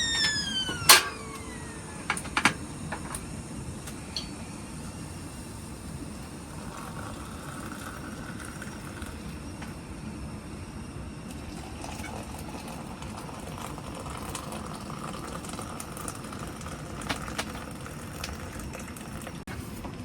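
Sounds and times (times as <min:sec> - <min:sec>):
kettle whistle: 0:00.0 - 0:03.2.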